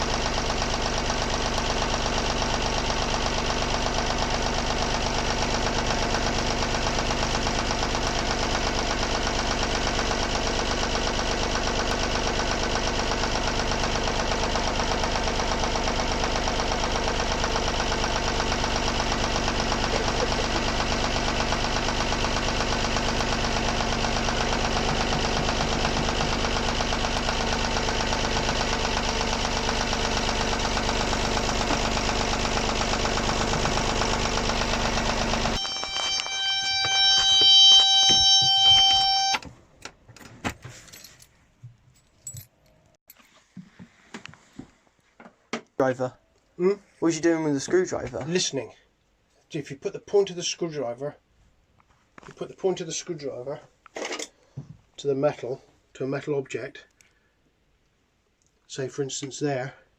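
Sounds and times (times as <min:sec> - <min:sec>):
diesel engine idling: 0:00.0 - 0:39.4.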